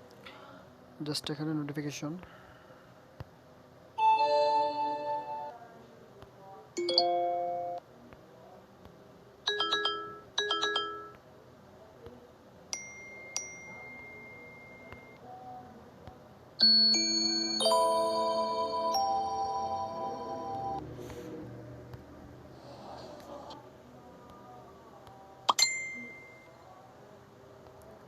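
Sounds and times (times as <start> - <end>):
phone notification chimes: 4.0 - 5.5, 16.7 - 20.8.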